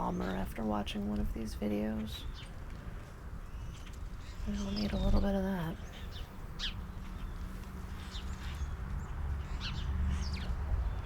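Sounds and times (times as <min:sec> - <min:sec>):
small songbirds chirping: 0:03.4 - 0:11.0.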